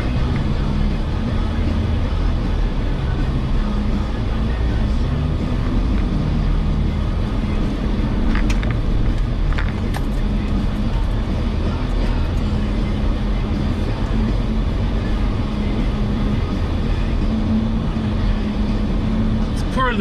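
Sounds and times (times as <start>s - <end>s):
engine low drone from inside cabin: 0.0s - 20.0s
clicks and knocks from vehicle body: 8.3s - 11.2s.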